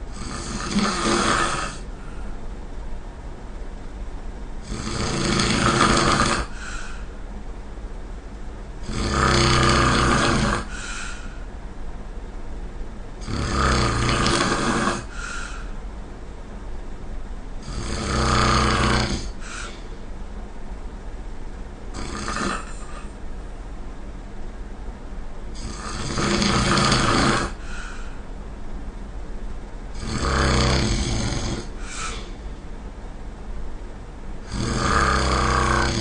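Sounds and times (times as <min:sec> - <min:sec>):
person snoring: 0:00.1 - 0:02.2, 0:04.6 - 0:07.1, 0:08.8 - 0:11.5, 0:13.2 - 0:15.8, 0:17.6 - 0:19.9, 0:21.9 - 0:23.2, 0:25.5 - 0:28.2, 0:29.9 - 0:32.4, 0:34.4 - 0:36.0
short faint breath: 0:27.6 - 0:28.2.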